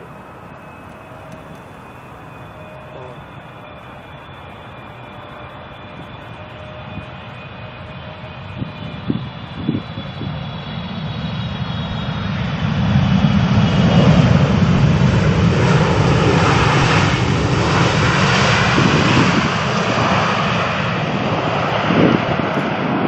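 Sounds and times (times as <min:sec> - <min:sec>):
jet airliner engines passing: 0:00.0 - 0:23.0.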